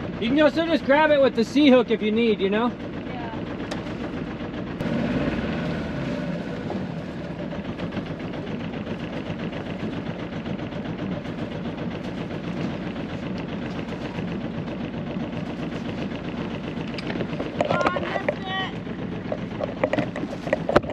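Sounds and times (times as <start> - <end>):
boat engine pulsing: 0.0 - 20.9.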